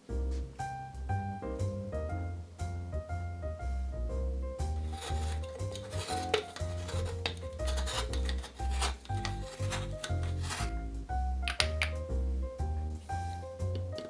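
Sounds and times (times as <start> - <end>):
piano music: 0.0 - 14.0
hand scraping and rubbing: 4.8 - 10.8.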